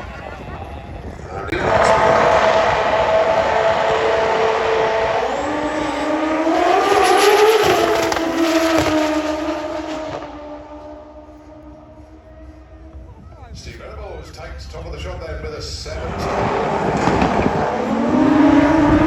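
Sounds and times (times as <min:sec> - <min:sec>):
motorcycle engine at full throttle: 0:01.5 - 0:13.2.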